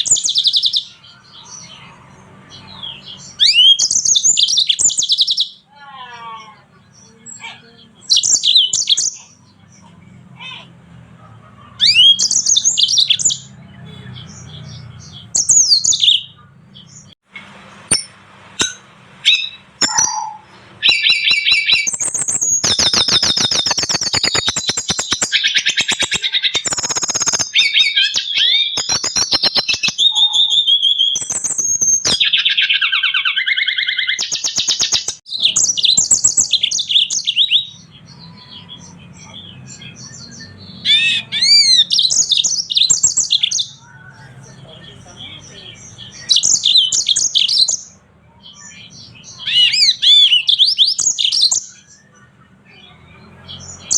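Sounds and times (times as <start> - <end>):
finches singing high trills: 19.2 - 53.9.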